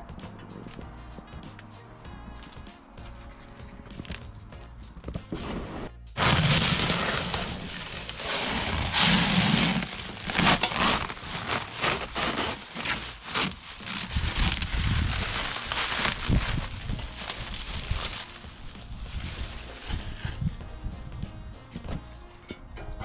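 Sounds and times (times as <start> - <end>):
music: 0.0 - 23.0
packaging ripped and rustling: 6.2 - 20.3.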